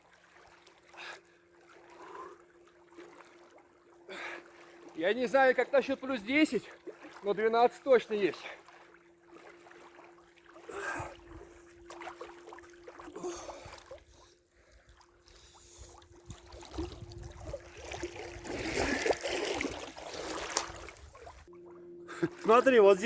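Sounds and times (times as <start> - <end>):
water sloshing and splashing: 0.0 - 23.0.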